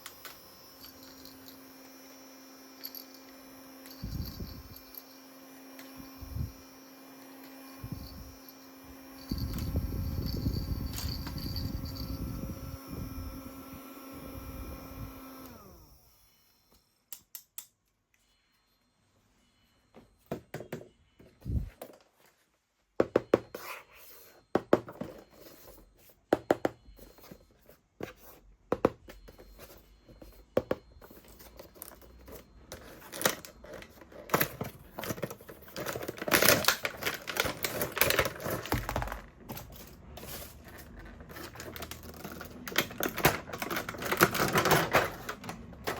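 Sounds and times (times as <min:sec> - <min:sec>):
mini fan motor humming: 0:00.0 - 0:16.8
crinkling rustles: 0:31.3 - 0:45.9.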